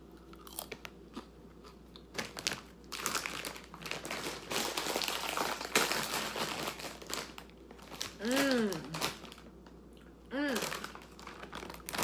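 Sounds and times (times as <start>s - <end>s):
plastic snack bag crinkling: 2.0s - 9.8s, 10.4s - 12.0s.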